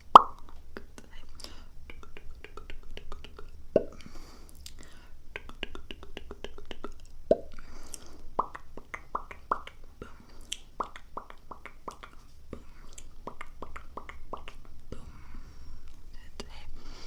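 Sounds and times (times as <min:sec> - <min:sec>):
mouth pops: 0:00.1 - 0:01.0, 0:01.9 - 0:04.8, 0:05.4 - 0:12.2, 0:12.9 - 0:14.7
wet tongue and lip clicks: 0:00.1 - 0:12.2, 0:12.9 - 0:14.7
soft breaths: 0:01.0 - 0:01.9, 0:03.9 - 0:05.4, 0:07.5 - 0:08.4, 0:12.1 - 0:13.2, 0:14.6 - 0:17.0.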